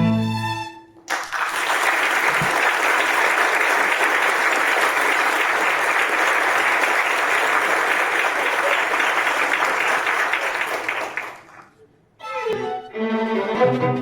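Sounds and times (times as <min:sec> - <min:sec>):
audience applauding: 0:01.1 - 0:11.8
string quartet bowed notes: 0:12.2 - 0:14.0.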